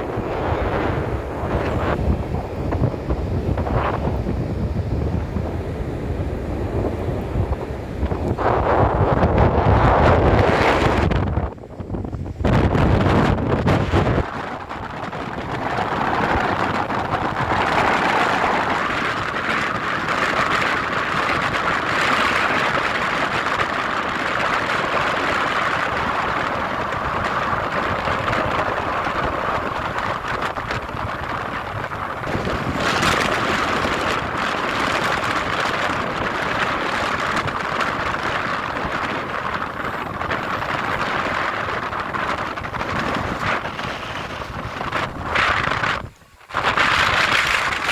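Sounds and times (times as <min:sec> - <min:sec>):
breaking surf: 0:00.0 - 0:47.9
sea wind: 0:00.0 - 0:47.9.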